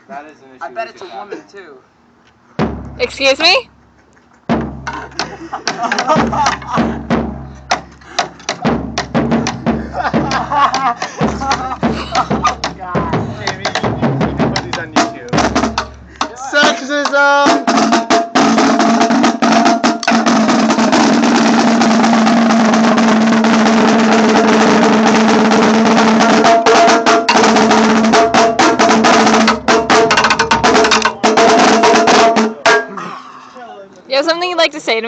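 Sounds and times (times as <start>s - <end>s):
marching drums played fast: 2.6s - 3.8s, 4.5s - 32.8s
snare drum roll: 17.5s - 32.6s.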